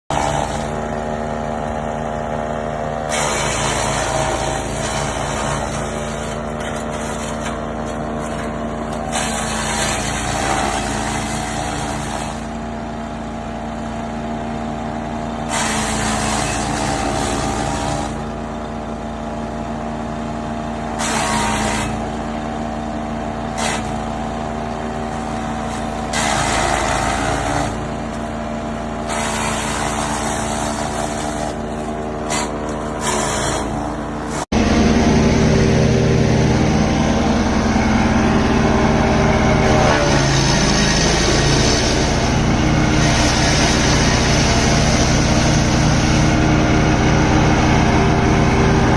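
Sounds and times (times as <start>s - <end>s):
wood chipper engine running: 0.0s - 48.9s
wood chipping and shredding: 0.1s - 14.0s, 15.3s - 19.0s, 20.7s - 48.9s.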